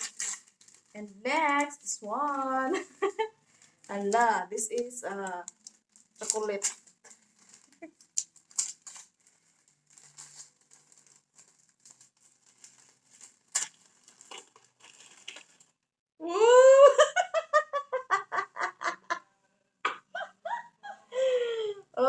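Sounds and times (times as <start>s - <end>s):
packaging crinkling: 0.0s - 15.8s
laughter: 16.7s - 19.3s, 19.9s - 21.1s.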